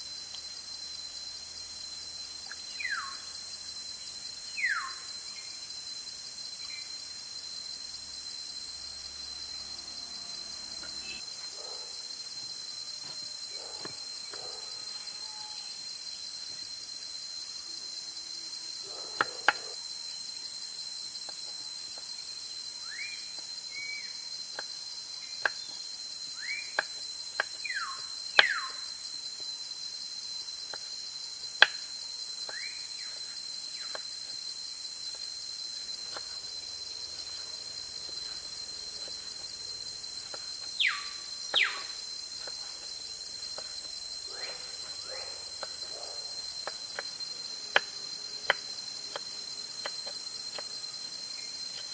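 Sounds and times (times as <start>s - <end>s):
insects droning: 0.0s - 51.9s
birds whistling: 40.8s - 41.8s.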